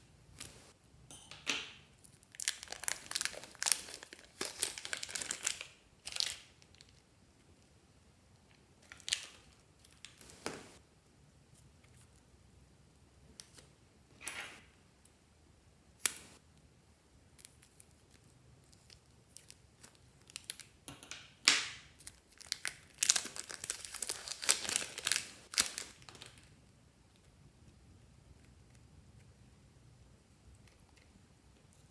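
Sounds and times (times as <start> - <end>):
plastic crinkling and tearing: 2.1 - 7.0, 8.8 - 10.8, 22.0 - 26.5.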